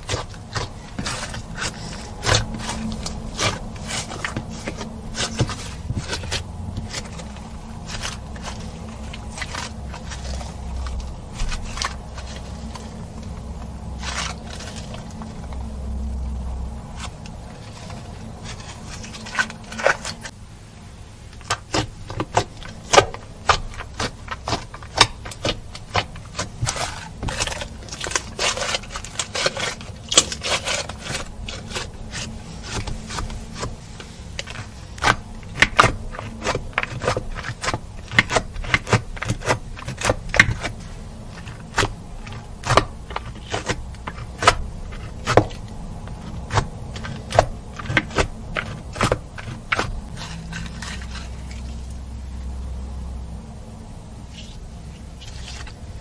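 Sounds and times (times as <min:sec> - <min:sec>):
low hum: 0:00.0 - 0:38.6.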